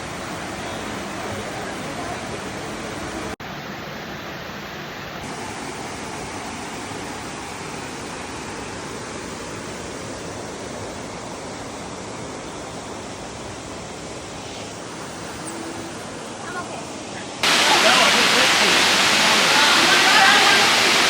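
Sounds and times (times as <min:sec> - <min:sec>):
water rushing over rocks: 0:11.8 - 0:21.0.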